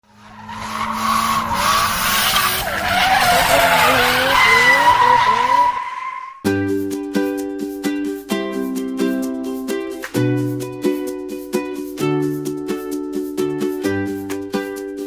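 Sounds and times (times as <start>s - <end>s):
wavering engine: 0.0s - 5.9s
tyres squealing: 0.2s - 6.4s
ukulele-like tune: 6.4s - 15.0s.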